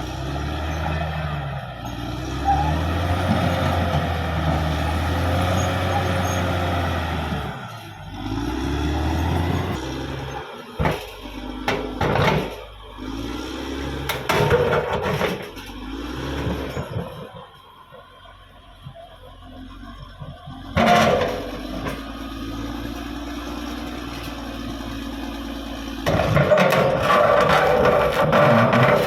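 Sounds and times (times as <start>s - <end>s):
bulldozer diesel engine running: 0.0s - 29.0s
sharp knocks and clanks: 26.0s - 29.0s.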